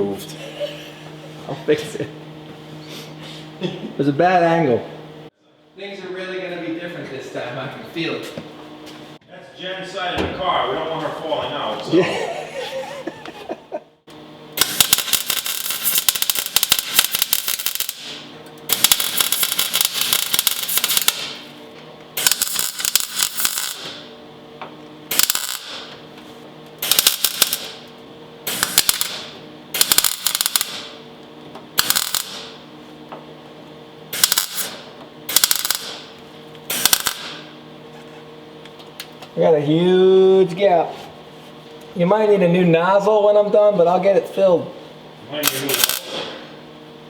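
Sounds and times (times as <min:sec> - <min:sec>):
steady hum: 0:00.0 - 0:47.0
welder arc crackling: 0:14.5 - 0:24.2, 0:25.0 - 0:32.8, 0:34.1 - 0:37.6, 0:45.3 - 0:46.4.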